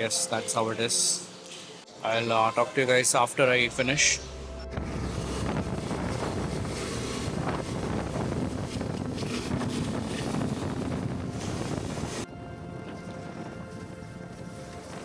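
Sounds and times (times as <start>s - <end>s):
motorcycle road noise: 3.6s - 12.3s
wind rushing over microphone: 3.6s - 15.0s.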